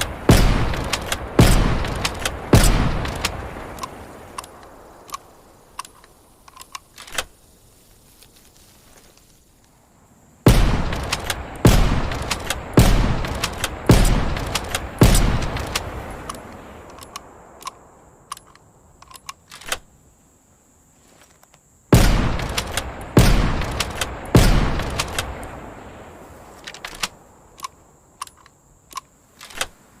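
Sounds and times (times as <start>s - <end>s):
rifle shots with echo: 0.0s - 4.0s, 10.5s - 16.3s, 21.9s - 25.6s
small clicks: 0.7s - 7.4s, 10.9s - 19.9s, 21.2s - 21.6s, 22.4s - 25.5s, 26.5s - 29.8s.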